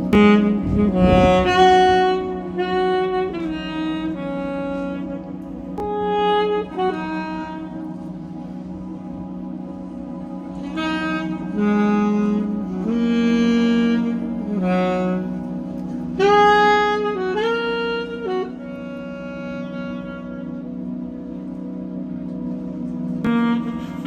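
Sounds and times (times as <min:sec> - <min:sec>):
slow melody of held notes: 0:00.0 - 0:24.0
sustained chord: 0:00.0 - 0:24.0.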